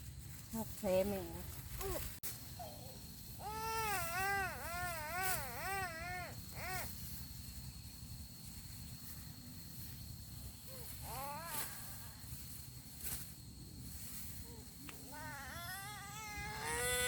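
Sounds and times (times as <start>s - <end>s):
young child crying: 3.4s - 6.9s, 15.1s - 17.0s.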